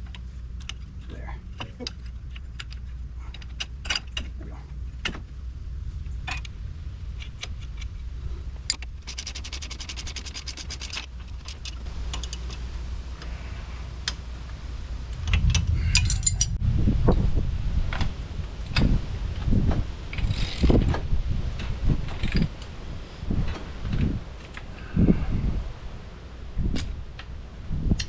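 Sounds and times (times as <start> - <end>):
low rumble: 0.0 - 10.2, 11.0 - 28.0
steady low hum: 0.0 - 28.0
metal clicks and clinks: 15.2 - 16.6.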